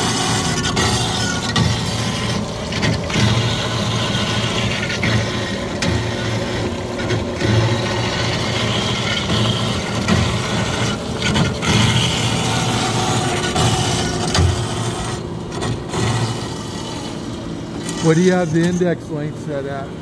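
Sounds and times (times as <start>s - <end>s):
low motor hum: 0.0s - 20.0s
bandsaw blade cutting metal: 7.4s - 19.0s.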